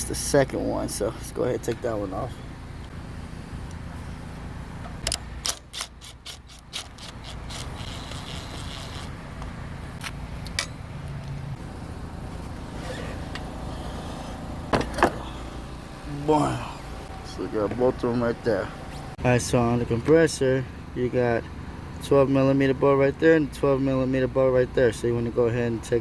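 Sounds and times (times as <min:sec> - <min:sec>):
hand ratchet clicking: 0:05.0 - 0:09.1.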